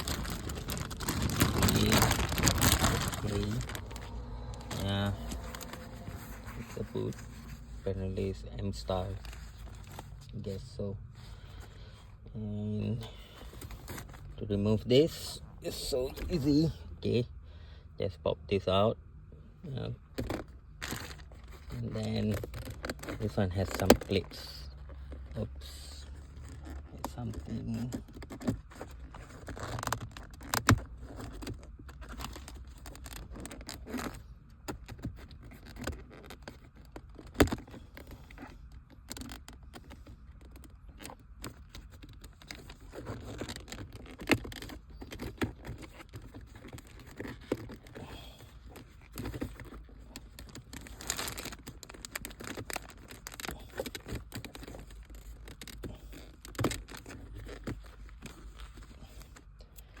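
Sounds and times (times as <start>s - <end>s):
plastic clicks and scraping: 20.1s - 25.5s, 26.1s - 60.0s.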